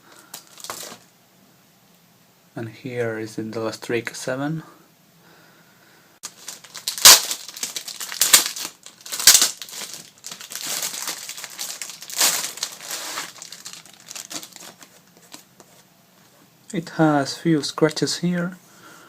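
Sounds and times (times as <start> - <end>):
loud plastic crackles: 0.1 - 1.1, 6.2 - 15.6
plastic packaging crinkling: 0.1 - 1.1, 6.2 - 15.8.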